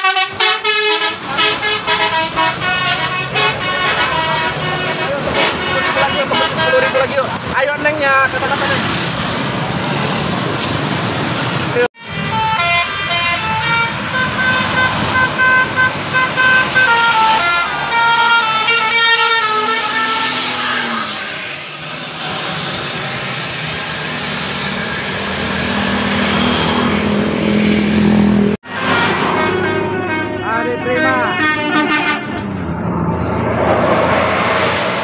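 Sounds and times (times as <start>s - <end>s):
multi-tone bus horn melody: 0.0s - 7.3s, 12.0s - 21.9s, 25.7s - 32.8s
bus going past: 0.9s - 35.0s.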